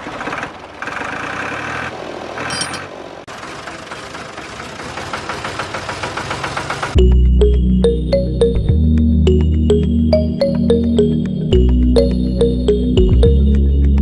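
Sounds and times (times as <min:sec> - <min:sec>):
music: 0:07.0 - 0:14.0.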